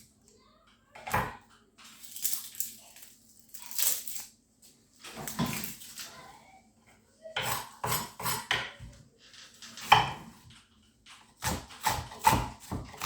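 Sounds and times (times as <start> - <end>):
kitchen utensils and dishes clattering: 5.0 - 6.2, 7.3 - 13.0.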